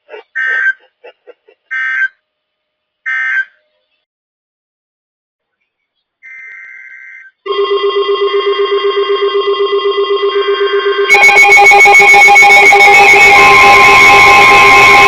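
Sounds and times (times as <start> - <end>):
high-pitched receiver alarm: 7.5 - 15.0
pulsing alarm beep: 8.6 - 15.0.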